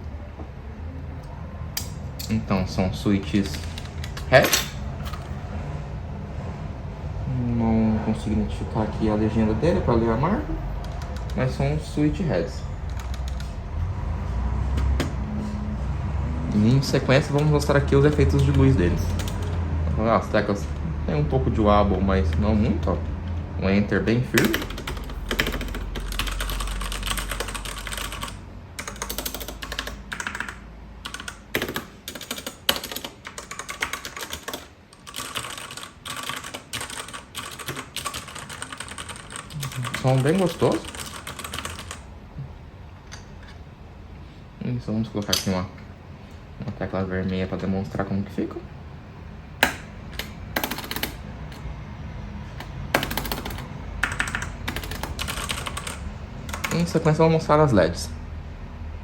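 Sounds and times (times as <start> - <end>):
mechanical keyboard typing: 3.4 - 4.4, 10.8 - 11.6, 12.8 - 13.6, 16.6 - 19.6, 24.3 - 42.0, 49.6 - 51.6, 52.6 - 56.9.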